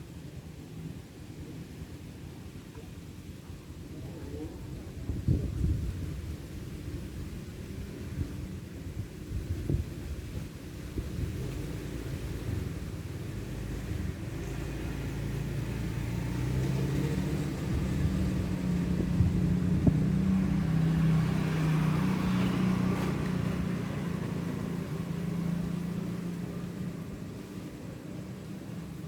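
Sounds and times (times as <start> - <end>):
low motor hum: 11.4 - 29.0.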